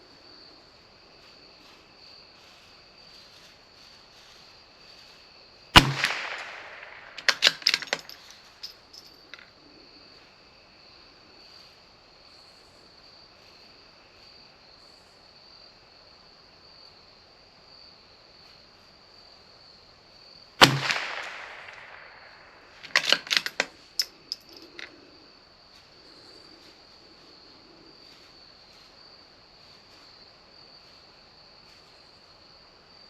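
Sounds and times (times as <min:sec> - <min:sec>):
rifle shot: 0:05.8 - 0:08.3, 0:20.6 - 0:23.7
rifle bolt metallic clicks: 0:05.8 - 0:09.4, 0:20.6 - 0:24.9.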